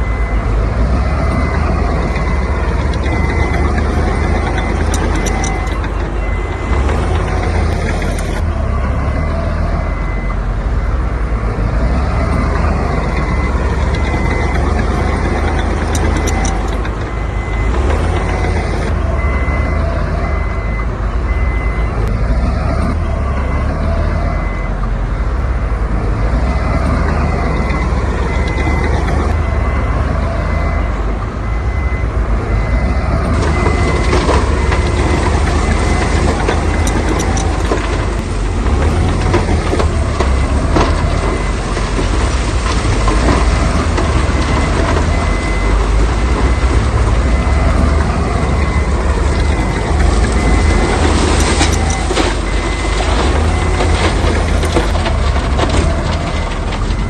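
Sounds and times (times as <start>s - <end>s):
diesel engine rumble: 0.0s - 57.0s
reversing alarm beeping: 0.0s - 57.0s.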